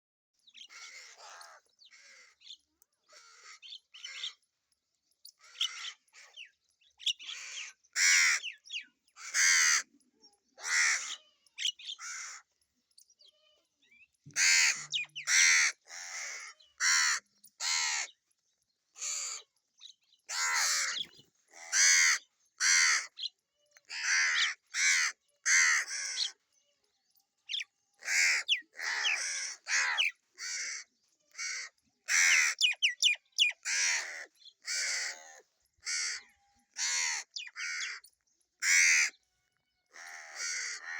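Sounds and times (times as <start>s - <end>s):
crows cawing: 0.6s - 2.4s, 3.1s - 4.4s, 5.4s - 6.4s, 7.2s - 8.6s, 9.2s - 9.9s, 10.6s - 12.5s, 14.3s - 18.1s, 19.0s - 19.5s, 20.3s - 23.3s, 23.9s - 26.4s, 27.5s - 38.0s, 38.6s - 39.2s, 39.9s - 40.9s.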